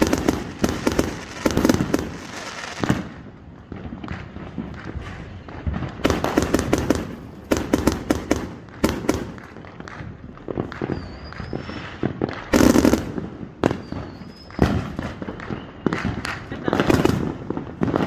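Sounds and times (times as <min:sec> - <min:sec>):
fireworks bangs and crackles: 0:00.0 - 0:18.0
short high firework whistles: 0:10.6 - 0:12.9, 0:13.6 - 0:16.4.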